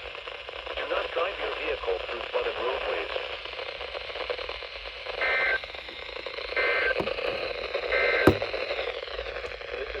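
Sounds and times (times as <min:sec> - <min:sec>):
steady radio hiss: 0:00.1 - 0:07.5.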